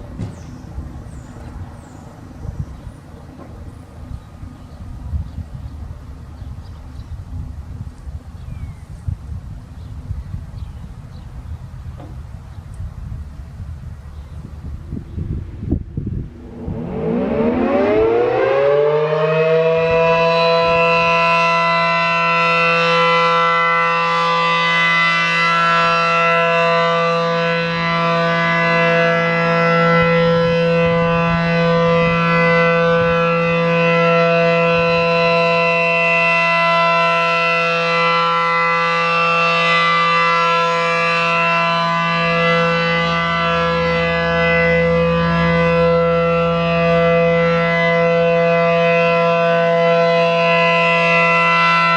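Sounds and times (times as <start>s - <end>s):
warning siren steady tone: 14.0s - 51.9s.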